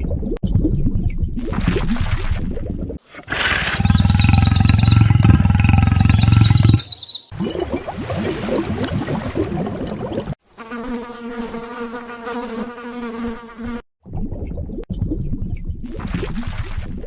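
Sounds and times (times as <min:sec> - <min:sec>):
flying insect buzzing: 0:10.6 - 0:13.8.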